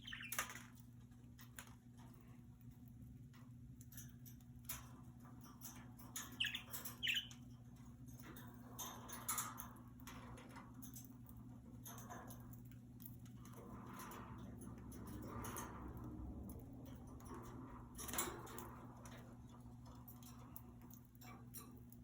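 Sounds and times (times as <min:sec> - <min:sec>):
budgerigars chirping: 0:00.0 - 0:00.6, 0:06.4 - 0:07.4
birds clicking and scratching: 0:00.0 - 0:22.0.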